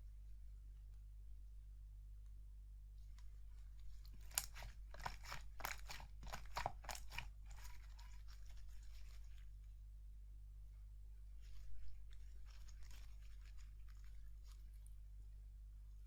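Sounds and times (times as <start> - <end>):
slime crackling and popping: 4.1 - 9.2.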